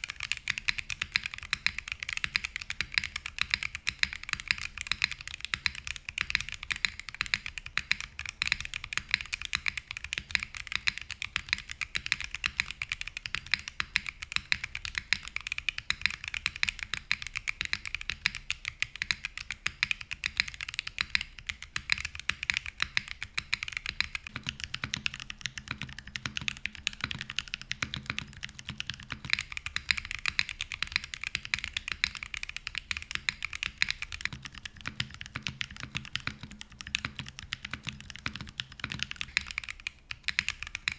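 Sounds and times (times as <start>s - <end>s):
fast typing on mechanical keyboard: 0.0s - 40.9s.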